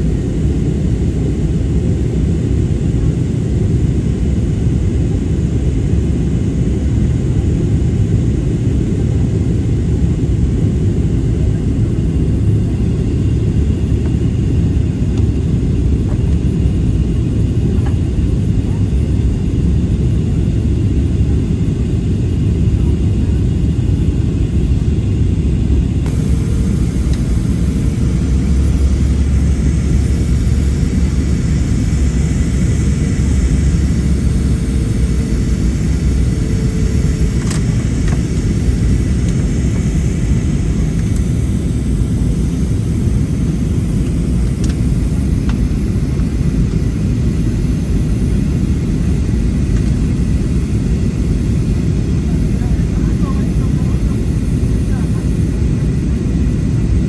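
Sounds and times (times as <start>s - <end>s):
jet engines and airflow rumble: 0.0s - 57.0s.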